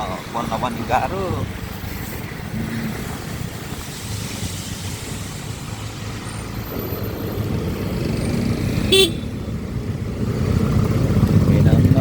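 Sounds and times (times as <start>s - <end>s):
road noise: 0.0s - 12.0s
truck and car engines: 0.0s - 12.0s
motorcycle engine: 6.2s - 12.0s.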